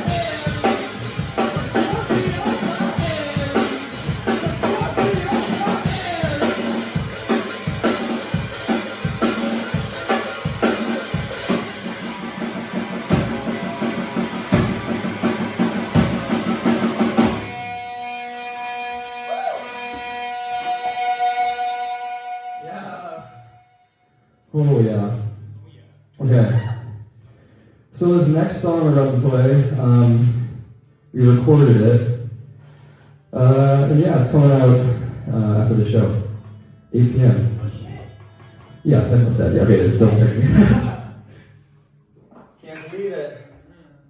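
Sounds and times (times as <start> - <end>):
drum kit: 0.0 - 17.8, 33.5 - 41.1
rock band playing: 0.0 - 22.8, 33.4 - 40.9
electric guitar: 0.0 - 23.6.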